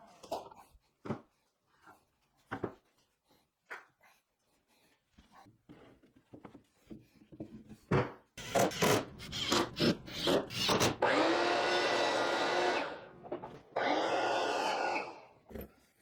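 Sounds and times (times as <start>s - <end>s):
wooden knocks and scraping: 7.4s - 11.0s
power drill driving screws: 8.4s - 15.3s.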